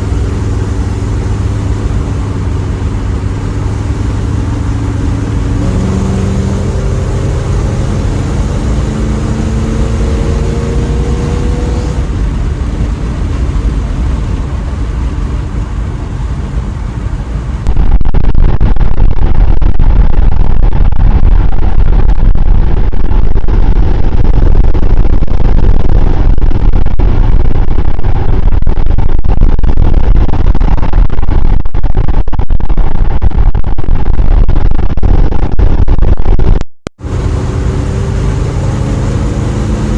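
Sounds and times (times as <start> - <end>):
car engine accelerating: 0.0 - 18.0, 37.0 - 39.9
road and wind noise: 0.0 - 39.9.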